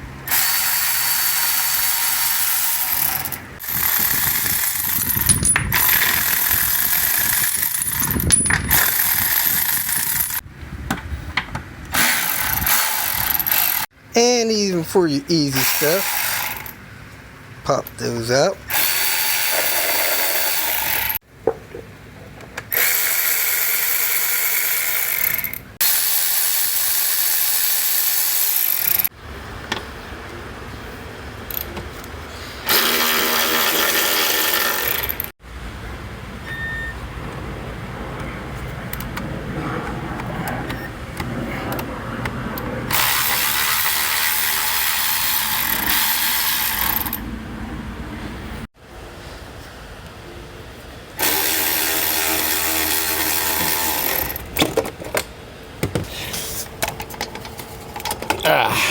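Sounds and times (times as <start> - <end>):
cordless ratchet motor whirring: 0.3 - 10.4, 12.0 - 13.8, 18.7 - 21.2, 42.9 - 47.2, 51.2 - 54.4.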